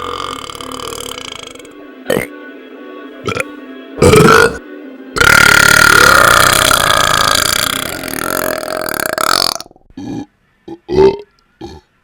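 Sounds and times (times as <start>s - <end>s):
long loud burp: 0.0s - 2.3s, 4.0s - 4.6s, 5.2s - 11.9s
short burps: 4.0s - 4.6s, 5.2s - 11.9s.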